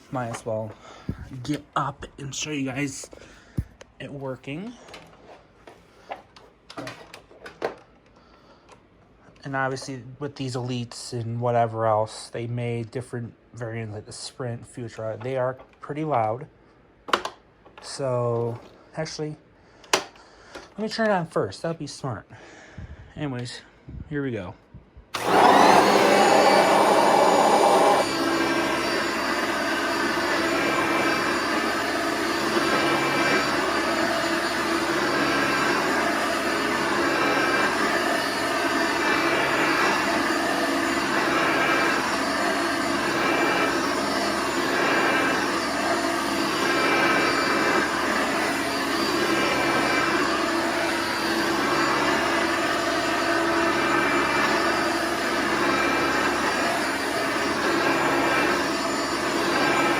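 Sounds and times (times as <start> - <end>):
vacuum cleaner running with whine: 25.1 - 59.9.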